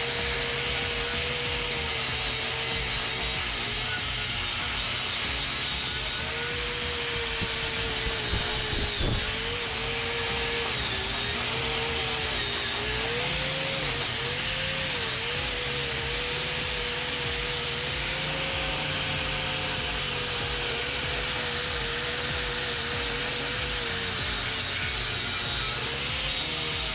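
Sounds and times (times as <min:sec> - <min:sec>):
power wire brush scrubbing metal: 0:00.0 - 0:26.9.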